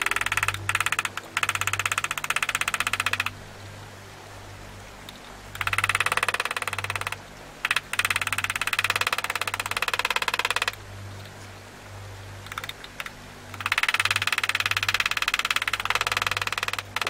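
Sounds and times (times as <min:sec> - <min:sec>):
engraving tool clicking on steel: 0:00.0 - 0:03.3, 0:05.6 - 0:10.8, 0:12.5 - 0:17.0.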